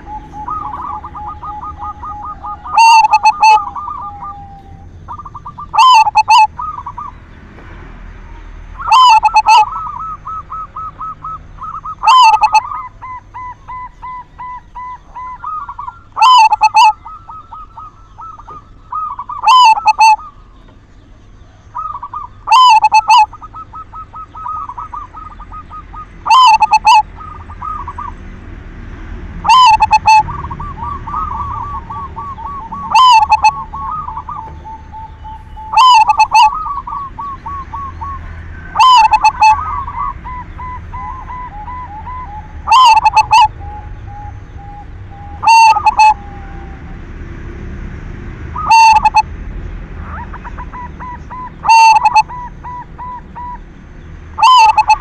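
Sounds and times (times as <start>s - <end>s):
dove cooing: 0.0s - 28.8s, 29.4s - 55.0s.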